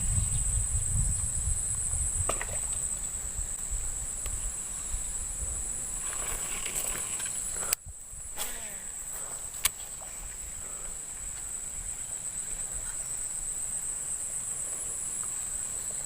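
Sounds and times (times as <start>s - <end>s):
low rumbling noise: 0.0s - 6.0s
insects trilling: 0.0s - 16.0s.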